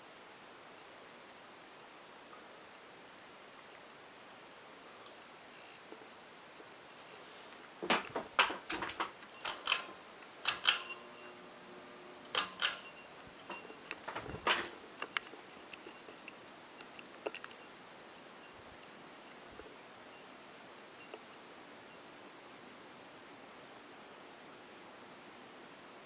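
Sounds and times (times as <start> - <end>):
faint fan hum: 0.0 - 26.0
pull chain clicking: 9.3 - 11.4, 12.3 - 14.2.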